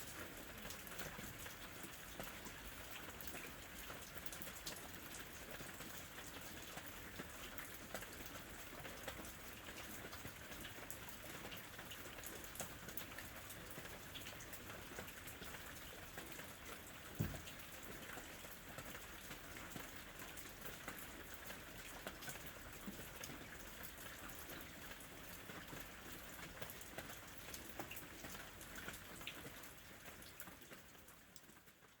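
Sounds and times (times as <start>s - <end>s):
rain drops ticking on surface: 0.0s - 32.0s
loud thump: 17.2s - 17.5s.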